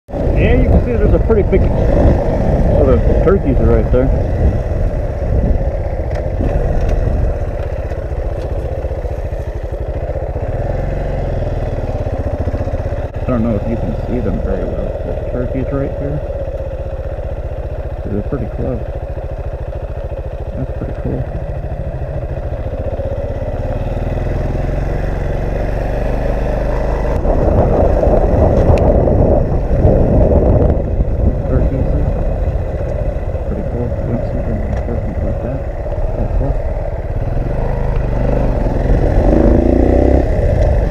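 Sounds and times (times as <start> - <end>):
wind rushing over microphone: 0.1 - 7.8, 26.9 - 40.9
motorcycle engine running: 0.1 - 40.9.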